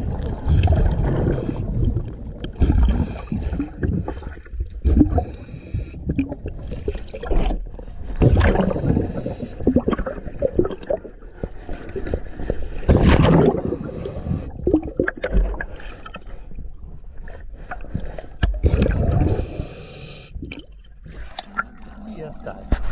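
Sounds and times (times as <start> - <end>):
underwater bubbles gurgling: 0.0 - 22.9.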